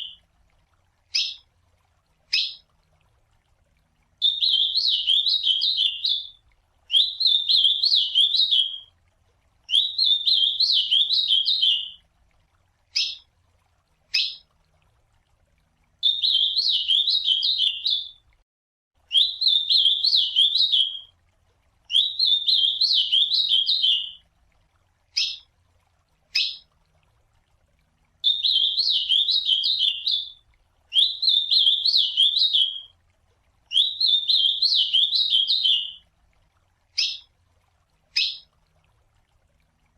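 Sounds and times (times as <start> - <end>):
bird singing warbling phrases: 0.0 - 0.2, 1.1 - 1.4, 2.3 - 2.7, 4.2 - 8.9, 9.7 - 12.0, 13.0 - 13.3, 14.1 - 14.5, 16.0 - 18.2, 19.1 - 21.1, 21.9 - 24.2, 25.2 - 25.5, 26.3 - 26.7, 28.2 - 32.9, 33.7 - 36.0, 36.9 - 37.3, 38.1 - 38.5.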